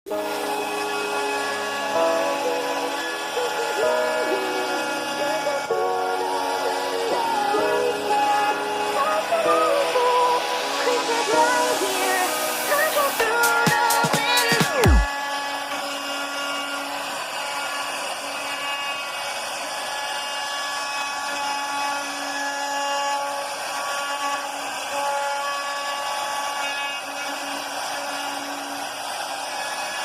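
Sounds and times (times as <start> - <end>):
router spindle cutting wood: 0.1 - 30.0.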